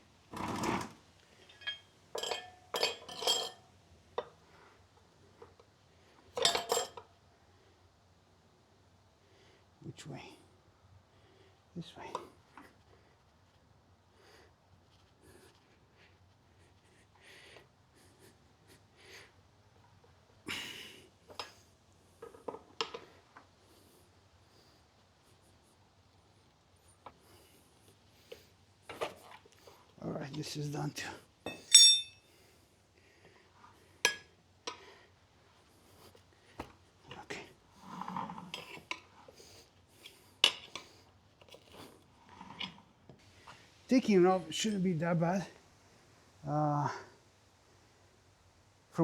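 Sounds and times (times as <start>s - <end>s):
metal tire levers clinking on rim: 6.4s - 7.0s, 31.5s - 32.2s.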